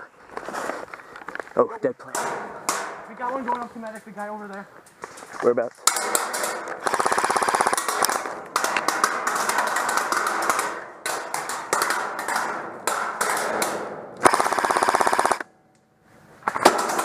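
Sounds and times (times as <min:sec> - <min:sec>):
airsoft guns firing full-auto: 0:05.9 - 0:15.4.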